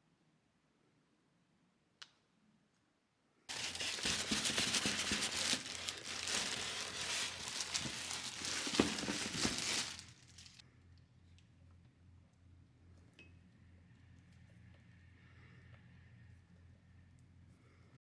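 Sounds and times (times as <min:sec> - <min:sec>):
plastic packaging crinkling: 0:03.5 - 0:10.6.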